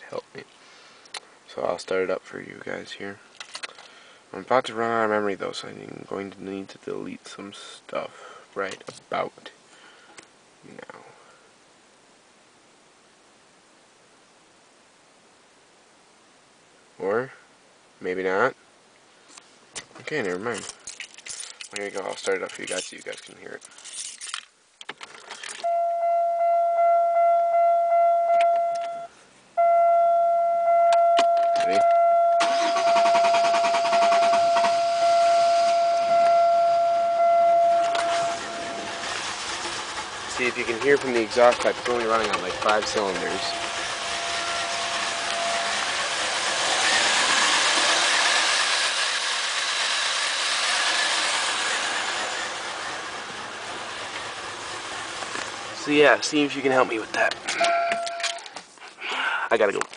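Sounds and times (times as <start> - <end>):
car keys rattling: 20.3 - 25.7, 40.5 - 45.9, 57.1 - 58.6
dashboard warning chime: 25.6 - 39.2, 42.3 - 46.0, 57.6 - 58.5
car engine cranking: 30.9 - 58.6
rushing exhaust noise: 31.7 - 58.1.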